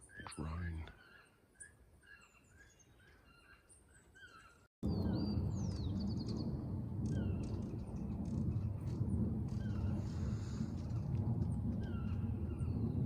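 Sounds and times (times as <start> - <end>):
hummingbirds chirping: 0.0 - 13.0
hummingbird wings droning: 5.8 - 13.0.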